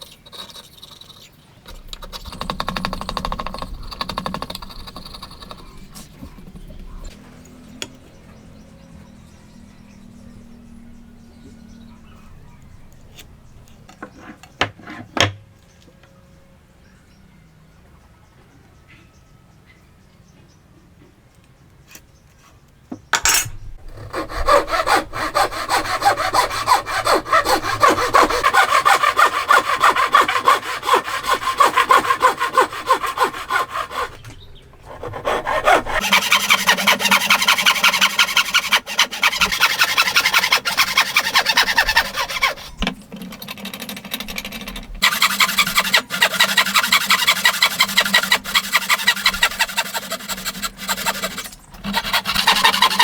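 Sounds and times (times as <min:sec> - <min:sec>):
hand saw cutting wood: 0:01.7 - 0:07.2, 0:23.9 - 0:53.0.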